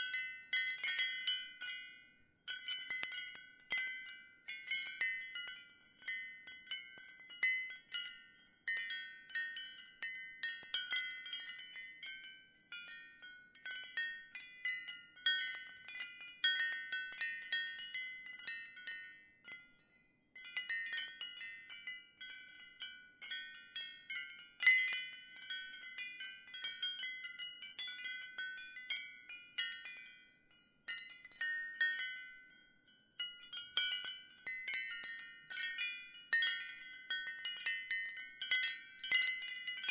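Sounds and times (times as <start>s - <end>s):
wind chimes ringing: 0.0s - 39.9s.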